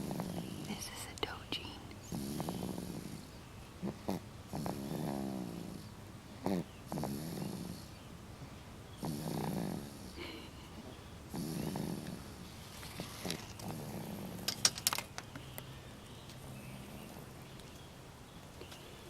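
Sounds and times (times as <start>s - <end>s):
baby snoring: 2.1s - 3.2s, 11.3s - 12.2s.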